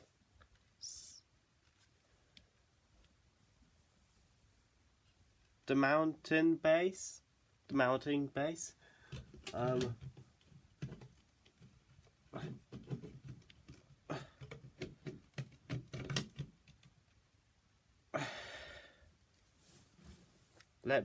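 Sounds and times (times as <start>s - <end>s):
light clicks and knocks of plastic: 9.0s - 17.2s
scraping rustle: 19.4s - 20.8s.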